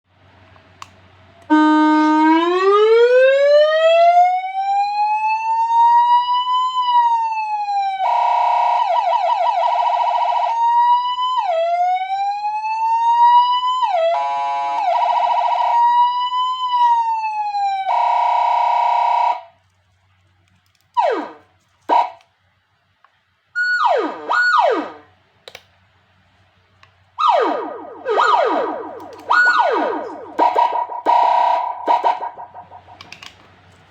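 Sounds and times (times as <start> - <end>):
electronic police siren: 1.5 - 19.5, 21.0 - 22.2, 23.6 - 25.0, 27.2 - 33.0.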